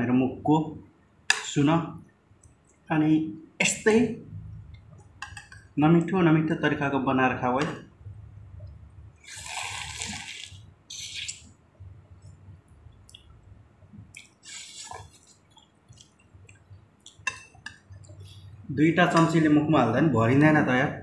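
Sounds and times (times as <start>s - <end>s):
person slurping noodle soup: 9.2s - 11.5s, 14.2s - 15.4s.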